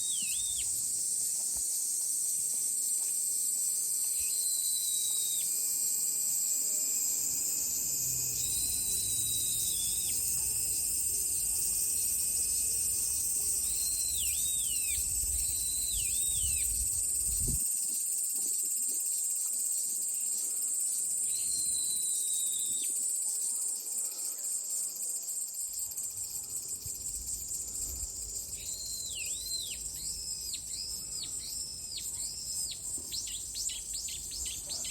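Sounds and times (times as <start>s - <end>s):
insect drone: 0.0s - 34.9s
birds whistling: 8.3s - 10.2s.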